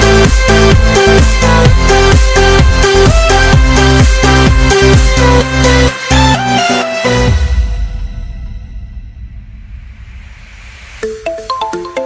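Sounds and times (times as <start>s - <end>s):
deep kick drums: 0.0s - 5.2s
electronic dance music: 0.0s - 7.9s, 10.4s - 12.0s.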